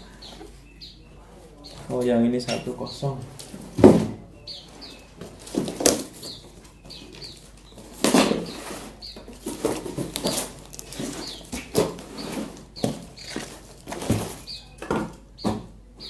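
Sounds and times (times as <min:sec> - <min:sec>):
high bird chirps: 0:00.0 - 0:01.9, 0:04.3 - 0:05.2, 0:06.1 - 0:09.4, 0:10.8 - 0:13.6.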